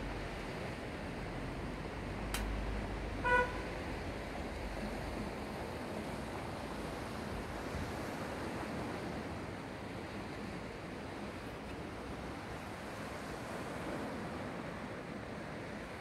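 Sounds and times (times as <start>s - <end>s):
sea waves washing on shore: 0.0s - 16.0s
short horn toot: 3.2s - 3.7s.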